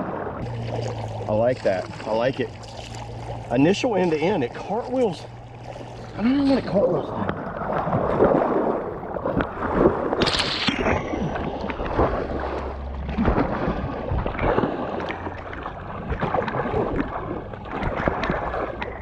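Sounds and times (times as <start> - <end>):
paddle strokes in water: 0.0 - 19.0
water splashing and gurgling: 0.0 - 19.0
wind buffeting microphone: 5.9 - 15.0.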